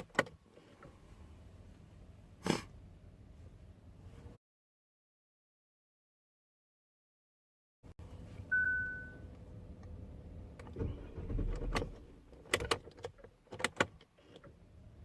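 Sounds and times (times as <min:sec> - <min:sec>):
car electronic chime: 0:08.5 - 0:09.3.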